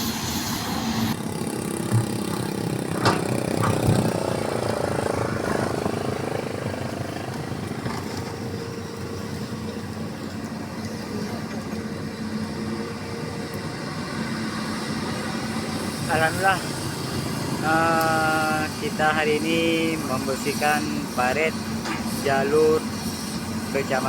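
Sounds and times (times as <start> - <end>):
excavator diesel engine running: 0.0 - 24.0
sharp knocks: 1.9 - 4.8.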